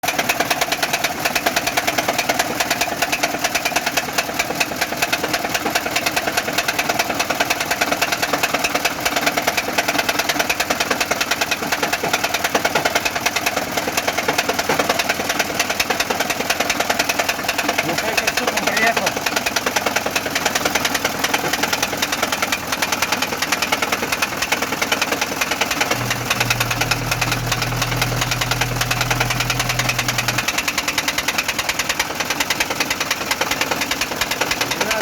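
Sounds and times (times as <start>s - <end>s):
fast regular engine knock: 0.0s - 35.0s
petrol engine idling: 0.1s - 35.0s.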